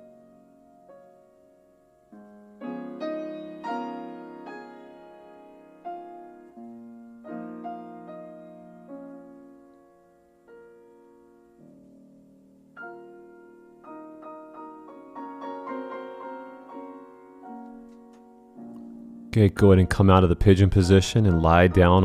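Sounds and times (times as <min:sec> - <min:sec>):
soft piano music: 0:00.0 - 0:22.0.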